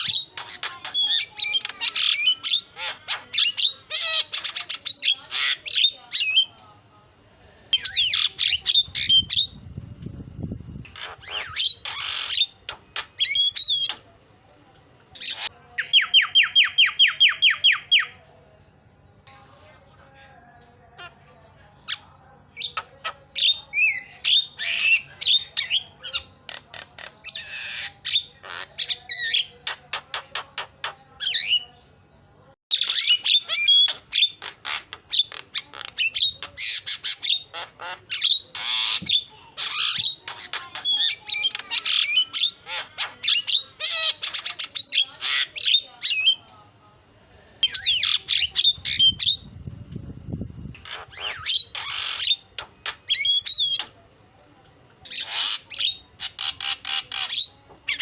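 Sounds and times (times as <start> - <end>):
myna bird calling: 21.9 - 31.7, 32.7 - 46.5, 50.7 - 54.0.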